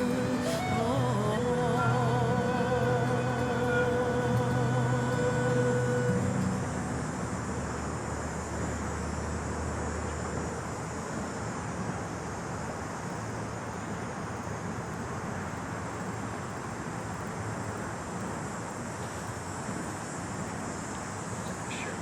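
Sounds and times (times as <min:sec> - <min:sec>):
low rumbling hum: 0:00.0 - 0:11.4.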